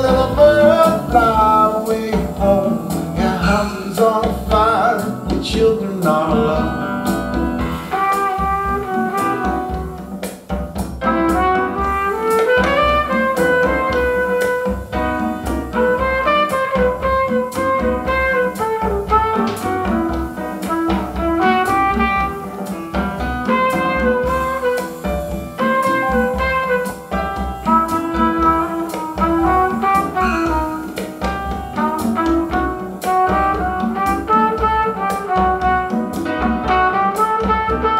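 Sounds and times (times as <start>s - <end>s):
instrumental music with drums: 0.0s - 37.9s.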